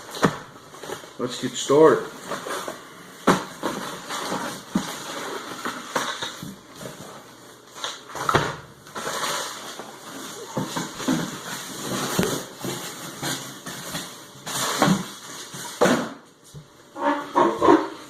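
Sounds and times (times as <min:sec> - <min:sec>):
cardboard box crinkling and rustling: 0:02.2 - 0:15.8.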